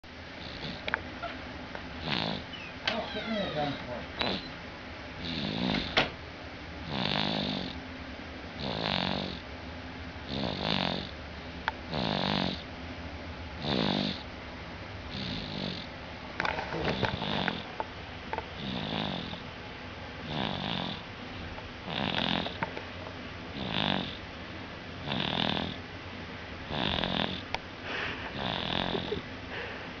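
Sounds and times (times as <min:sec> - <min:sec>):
baby snoring: 0:00.4 - 0:00.9, 0:02.0 - 0:02.5, 0:03.3 - 0:04.5, 0:05.2 - 0:06.0, 0:06.8 - 0:07.8, 0:08.6 - 0:09.4, 0:10.3 - 0:11.1, 0:11.9 - 0:12.6, 0:13.6 - 0:14.3, 0:15.1 - 0:15.9, 0:16.8 - 0:17.7, 0:18.6 - 0:19.4, 0:20.2 - 0:21.0, 0:21.8 - 0:22.6, 0:23.6 - 0:24.2, 0:25.0 - 0:25.8, 0:26.7 - 0:27.5, 0:28.3 - 0:29.2.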